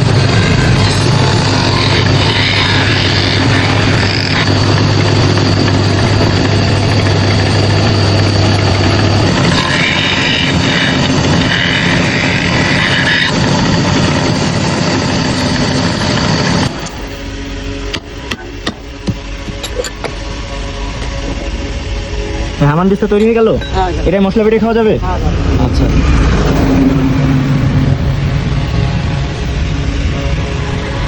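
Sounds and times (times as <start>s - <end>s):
power tool motor running: 0.0s - 22.8s.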